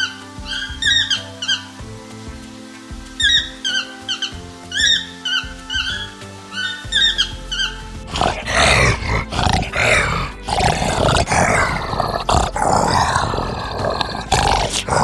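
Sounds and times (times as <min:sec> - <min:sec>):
animal growling and roaring: 0:08.1 - 0:15.0.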